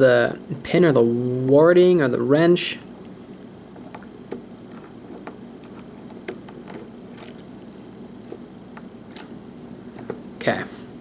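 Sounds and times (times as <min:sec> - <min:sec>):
lock pick clicking on pins: 0:03.9 - 0:09.3.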